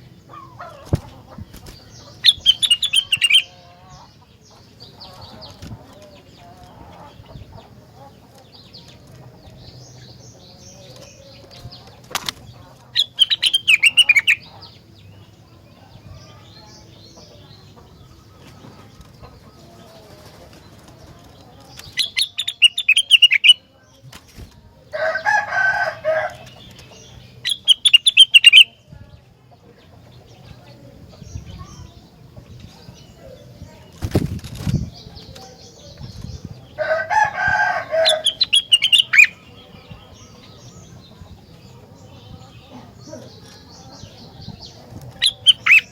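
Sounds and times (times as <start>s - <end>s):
songbird chattering: 0.0s - 11.9s, 12.5s - 19.6s, 21.4s - 23.7s, 25.9s - 29.0s, 34.7s - 45.9s
bird chirps: 1.7s - 5.4s, 12.9s - 15.2s, 21.8s - 23.7s, 26.4s - 28.8s, 37.9s - 45.9s
bird rasping call: 37.8s - 39.3s.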